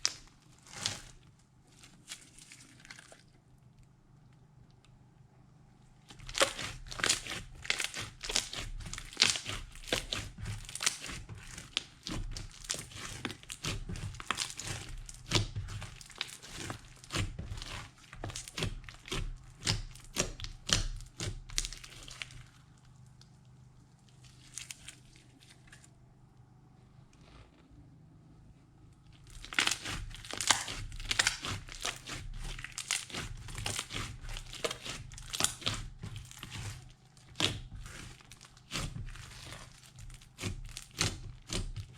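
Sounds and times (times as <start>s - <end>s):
slime crackling pops: 29.4s - 36.8s.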